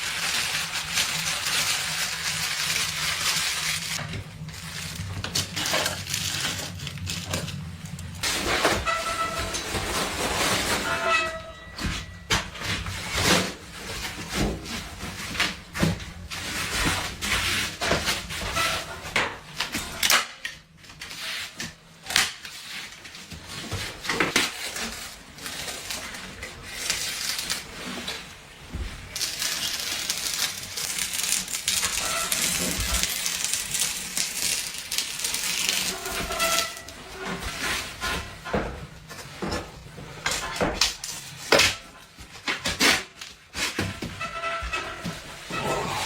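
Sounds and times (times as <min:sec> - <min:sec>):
small objects clicking and knocking: 0:29.2 - 0:36.8.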